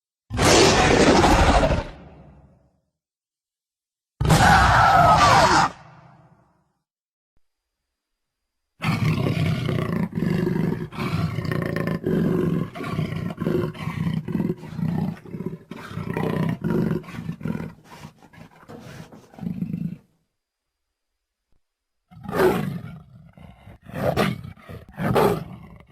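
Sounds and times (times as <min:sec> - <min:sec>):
dinosaur growls and roars: 0:00.3 - 0:02.6, 0:04.2 - 0:06.2, 0:08.8 - 0:20.1, 0:22.1 - 0:25.9.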